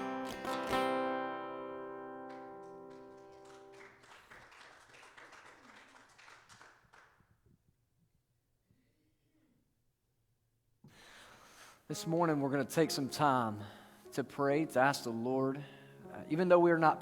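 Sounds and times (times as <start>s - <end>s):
acoustic guitar chord ringing: 0.0s - 3.7s.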